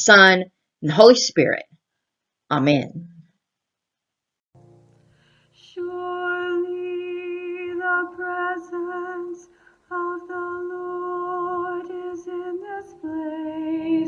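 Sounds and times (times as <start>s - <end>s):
long held sung notes: 5.6s - 14.0s.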